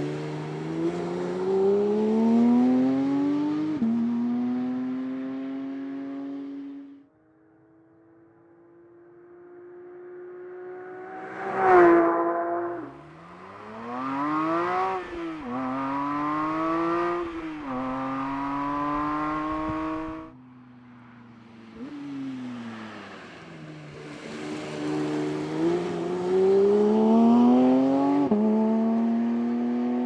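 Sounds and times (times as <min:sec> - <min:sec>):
sports car engine revving: 0:10.5 - 0:20.3.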